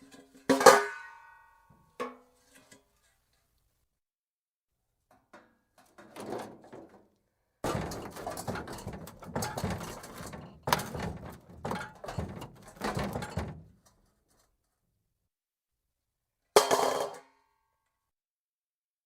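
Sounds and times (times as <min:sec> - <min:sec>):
metal hubcap clattering on concrete: 0:00.0 - 0:01.1, 0:07.6 - 0:13.9, 0:16.6 - 0:17.2.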